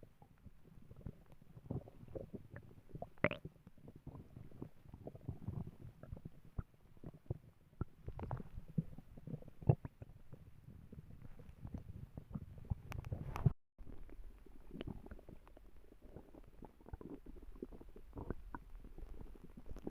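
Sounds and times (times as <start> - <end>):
stomach growling: 0.0 - 19.9.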